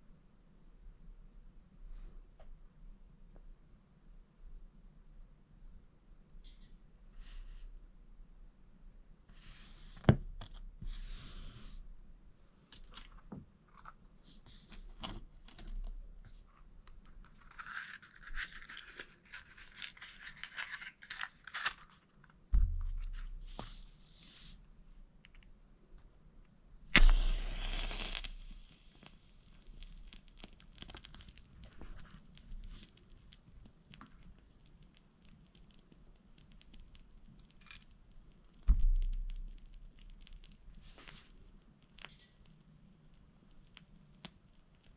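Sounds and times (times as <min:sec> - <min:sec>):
scraping and tearing handling: 0:17.0 - 0:22.4
sudden loud hiss: 0:26.9 - 0:31.6.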